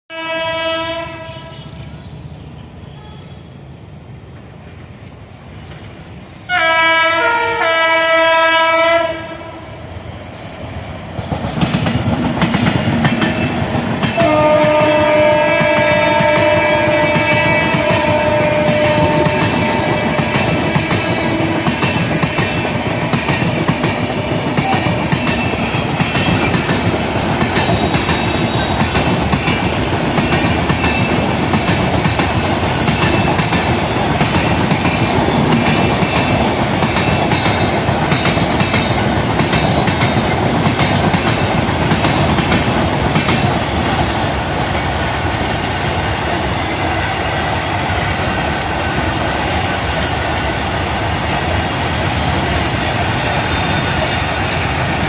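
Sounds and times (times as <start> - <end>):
train horn blasts: 0.1 - 1.9, 6.5 - 9.8, 14.2 - 22.6
train rumble: 0.1 - 55.0.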